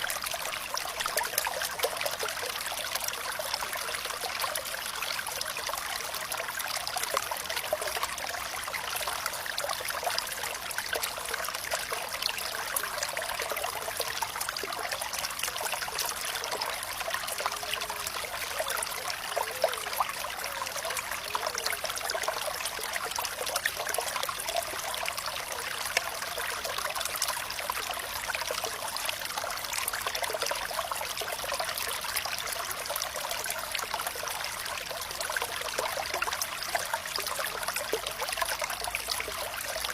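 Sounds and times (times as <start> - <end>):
water bubbling and gurgling: 0.0 - 39.9
water flowing over stones: 0.0 - 39.9.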